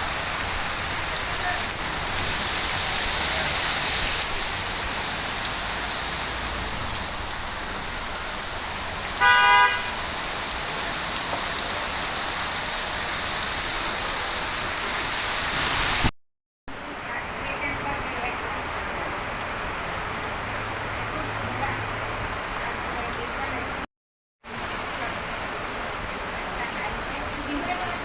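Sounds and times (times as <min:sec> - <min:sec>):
heavy rain falling: 0:00.0 - 0:16.1, 0:16.7 - 0:28.0
vehicle horn toot: 0:09.2 - 0:10.0.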